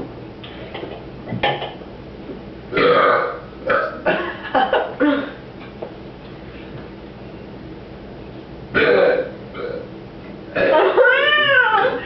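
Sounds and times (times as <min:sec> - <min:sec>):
person burping: 0:02.7 - 0:04.2, 0:08.8 - 0:09.9, 0:10.5 - 0:11.0.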